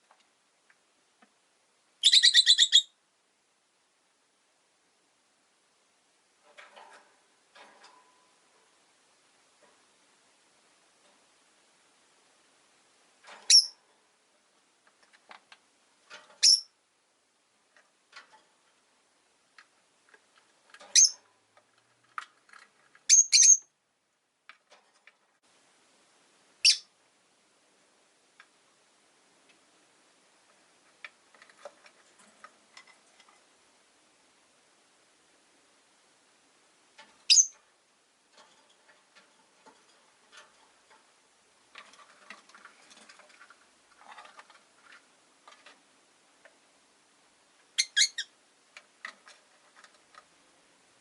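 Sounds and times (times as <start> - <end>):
lovebirds chirping: 2.0 - 3.0, 13.5 - 13.8, 16.4 - 16.7, 20.9 - 21.2, 23.1 - 23.7, 26.6 - 26.9, 37.2 - 37.6, 47.7 - 48.3
faint clicks and rustles: 5.4 - 23.1, 24.0 - 26.1, 27.5 - 51.0.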